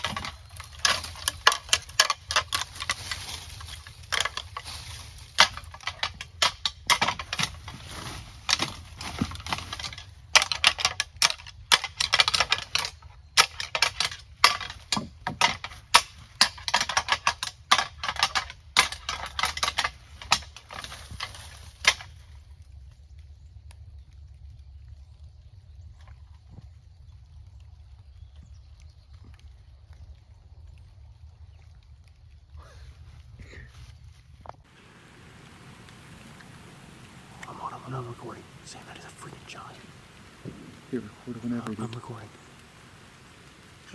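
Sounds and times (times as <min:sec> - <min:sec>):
antlers clashing and grinding: 0:00.0 - 0:22.2.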